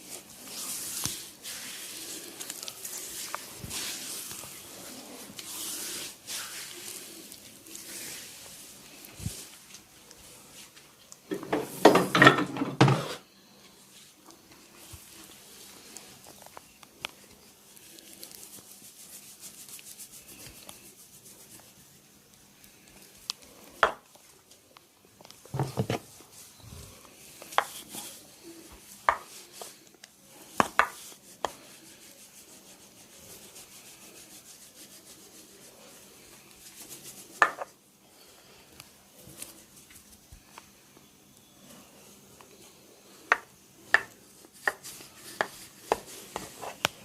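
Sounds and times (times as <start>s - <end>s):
hands rubbing skin in massage: 0.0s - 10.8s, 17.7s - 22.1s, 26.0s - 37.8s.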